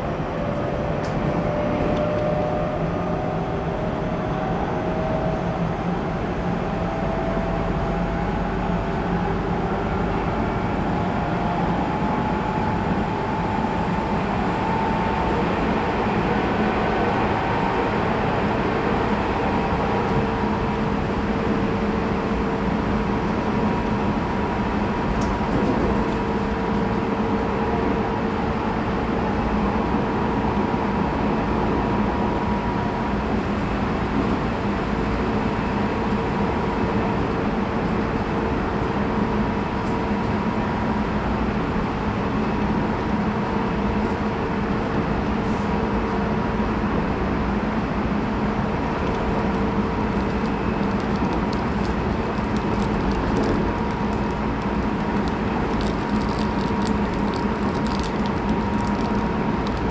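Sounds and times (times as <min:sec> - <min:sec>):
train wheels rumbling on rail: 0:00.0 - 0:29.9, 0:31.6 - 0:59.9
constant electric hum: 0:47.9 - 0:59.9.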